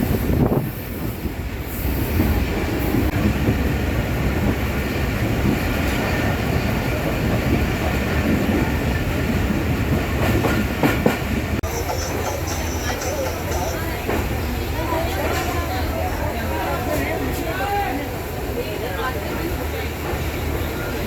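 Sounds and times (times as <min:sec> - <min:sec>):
train wheels rumbling: 0:00.0 - 0:21.0
sharp train clacks: 0:04.4 - 0:16.1.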